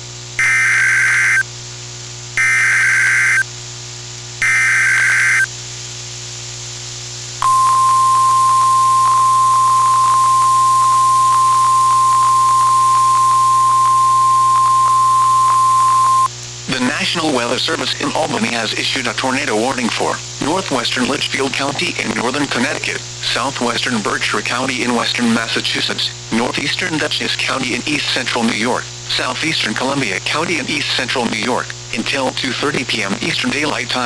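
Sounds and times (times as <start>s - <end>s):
steady warning alarm tone: 0.4s - 1.4s, 2.4s - 3.4s, 4.4s - 5.5s, 7.4s - 16.3s
warbling data tone bursts: 0.4s - 1.4s, 2.4s - 3.5s, 4.4s - 5.5s, 7.4s - 16.3s.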